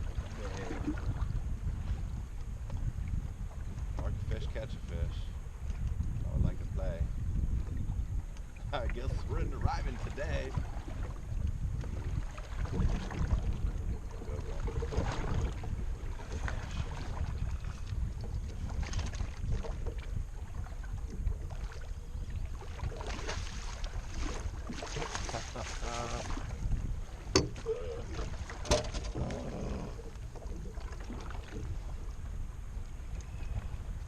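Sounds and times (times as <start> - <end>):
low wind rumble: 0.0 - 34.0
water rumble: 0.0 - 34.0
sharp knocks on a boat: 27.2 - 27.6, 28.6 - 29.4.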